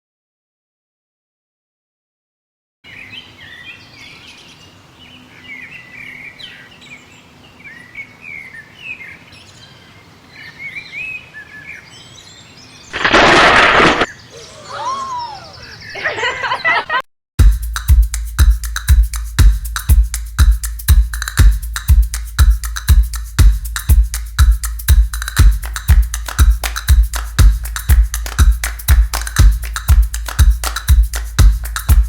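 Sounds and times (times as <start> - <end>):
songbirds chirping: 2.9 - 16.9.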